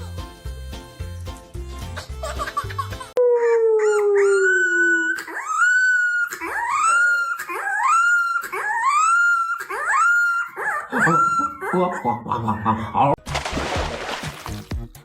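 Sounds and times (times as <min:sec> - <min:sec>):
dog howling: 0:03.2 - 0:11.9.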